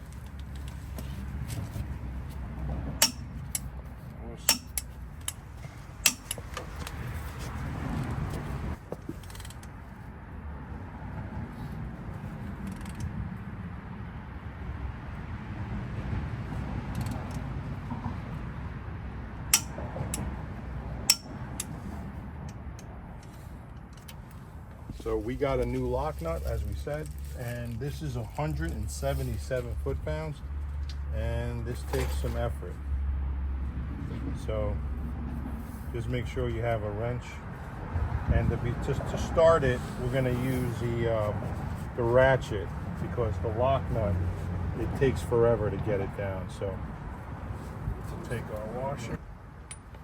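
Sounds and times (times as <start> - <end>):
metal tools clinking: 4.5 - 6.6.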